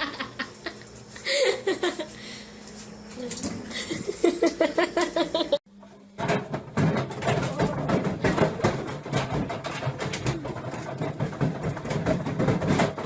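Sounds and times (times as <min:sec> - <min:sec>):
washing machine motor hum: 0:00.0 - 0:13.0
washing machine rattling: 0:06.2 - 0:13.0.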